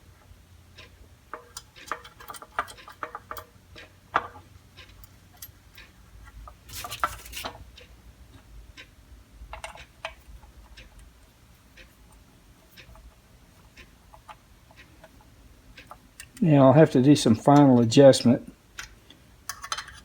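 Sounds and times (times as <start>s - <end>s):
metal tools clicking and knocking: 1.3s - 3.5s, 18.8s - 20.0s.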